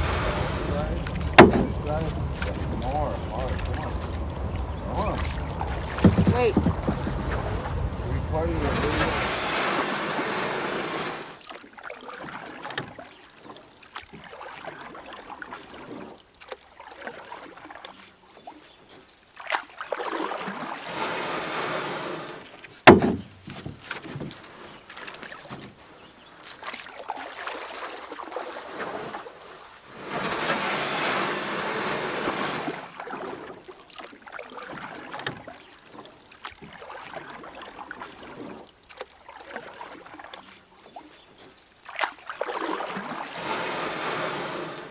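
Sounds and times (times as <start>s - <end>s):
water dripping: 0.0s - 9.1s
paddle splashing water: 0.0s - 44.9s
sharp knock: 0.6s - 4.1s, 22.9s - 23.4s.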